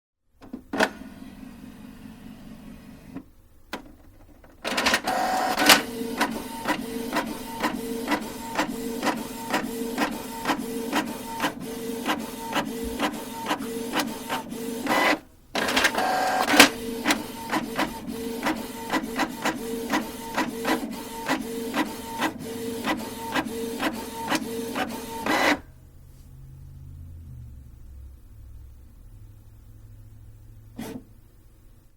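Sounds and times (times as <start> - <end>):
printer mechanical hum: 0.4 - 25.8, 27.7 - 31.8
printer clicks: 3.2 - 25.6.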